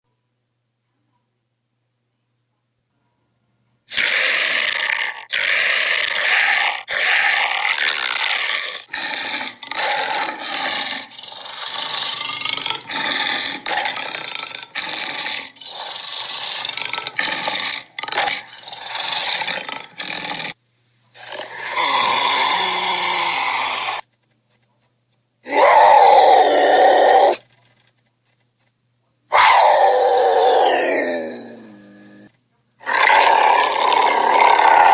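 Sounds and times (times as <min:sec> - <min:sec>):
tiger snarling: 0:03.9 - 0:20.6, 0:21.2 - 0:24.0, 0:25.4 - 0:27.4, 0:29.3 - 0:34.9.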